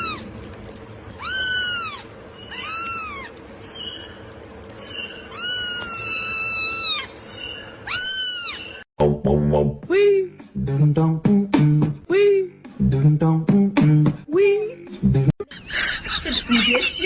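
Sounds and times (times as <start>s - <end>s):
cat meowing: 0.0s - 0.3s, 1.2s - 3.9s, 4.8s - 8.8s.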